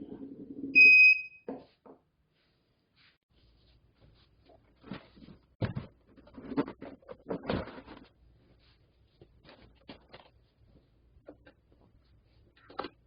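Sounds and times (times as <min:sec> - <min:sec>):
scraping and clicking handling noises: 0:04.5 - 0:10.4.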